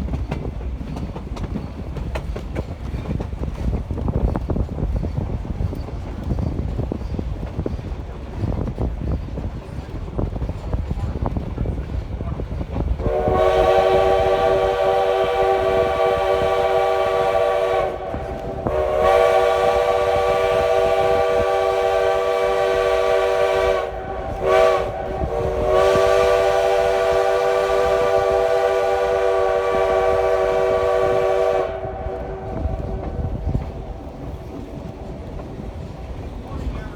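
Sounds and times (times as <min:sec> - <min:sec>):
moving train rumble: 0:00.0 - 0:36.9
steam locomotive whistle blasts: 0:13.0 - 0:34.0.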